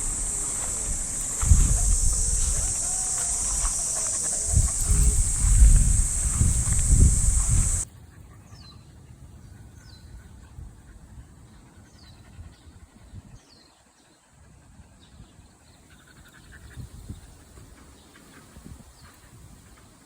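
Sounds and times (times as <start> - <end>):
birds chirping: 0.0 - 7.8
footsteps on a path: 0.0 - 7.8
low outdoor rumble: 0.0 - 7.8.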